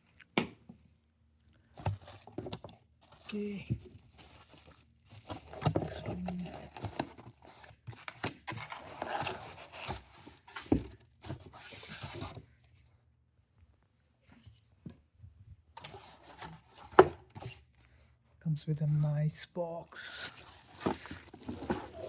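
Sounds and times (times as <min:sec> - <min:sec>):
packaging rustling: 0:01.8 - 0:10.5, 0:19.9 - 0:22.0
packaging tearing: 0:03.0 - 0:09.9, 0:20.0 - 0:22.0.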